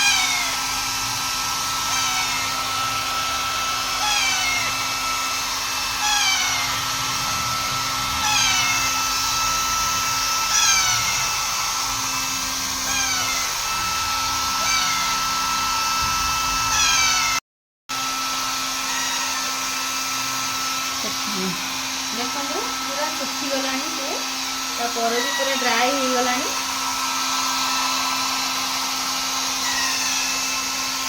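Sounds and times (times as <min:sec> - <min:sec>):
hair dryer running: 0:00.0 - 0:31.0
parrot chirping: 0:01.8 - 0:02.7, 0:03.9 - 0:05.1, 0:06.0 - 0:07.0, 0:07.8 - 0:15.2.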